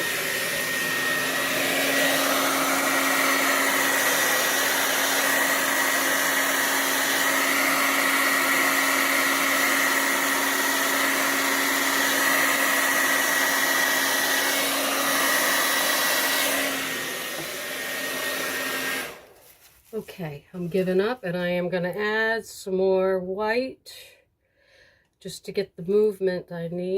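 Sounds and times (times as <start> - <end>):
blow dryer running: 0.0 - 19.4.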